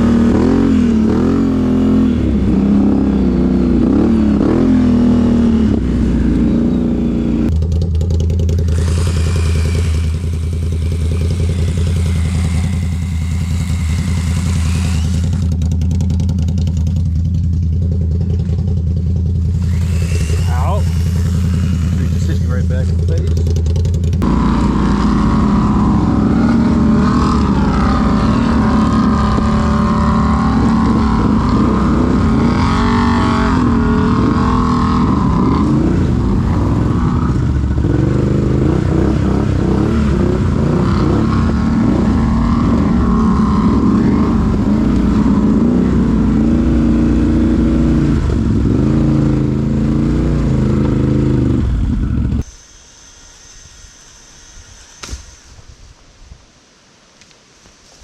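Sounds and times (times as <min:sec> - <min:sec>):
atv engine revving: 0:00.0 - 0:52.5.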